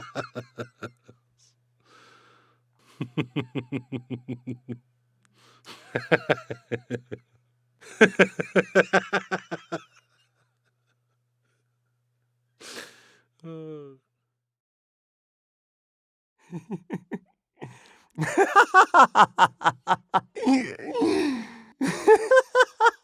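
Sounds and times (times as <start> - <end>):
man laughing: 0.0 - 1.1, 2.9 - 4.8, 5.7 - 7.2, 7.8 - 10.0, 16.4 - 23.0
breathy gasp: 1.8 - 2.6, 12.6 - 13.8, 17.6 - 18.1, 20.8 - 21.8.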